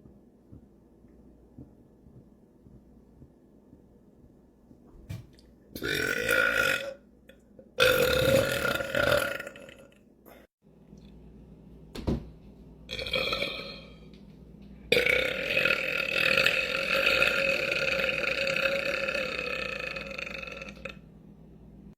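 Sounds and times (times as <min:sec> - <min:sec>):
man belching: 0:05.8 - 0:07.0, 0:07.8 - 0:09.9, 0:12.9 - 0:14.0, 0:14.9 - 0:21.0.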